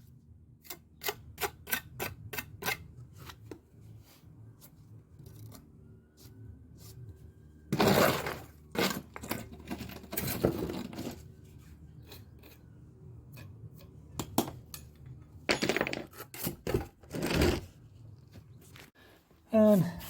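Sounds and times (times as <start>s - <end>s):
hand tool scraping mortar: 7.8s - 12.7s.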